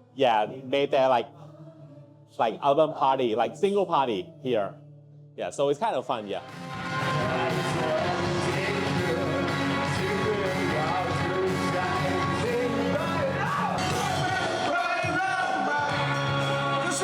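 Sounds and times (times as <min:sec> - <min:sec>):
rock band with singing: 0:06.4 - 0:17.0.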